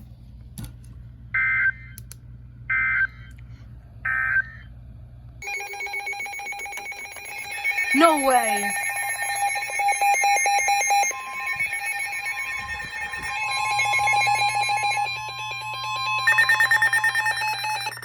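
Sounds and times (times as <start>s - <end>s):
rapidly pulsing alert tone: 5.4s - 18.0s
steady higher alert tone: 5.4s - 18.0s.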